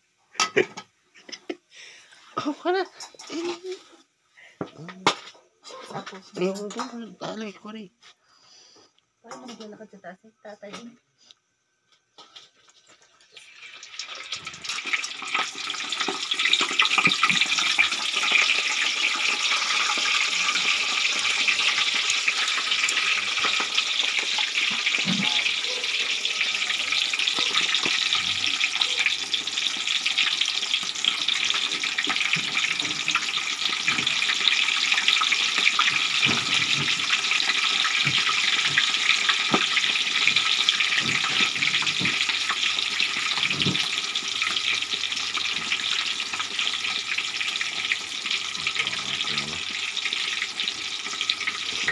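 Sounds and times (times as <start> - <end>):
meat deep-frying in oil: 12.3 - 51.9.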